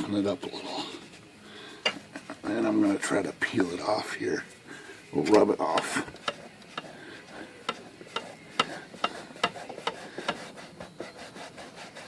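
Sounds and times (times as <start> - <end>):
rag rubbing on metal: 5.2 - 12.0.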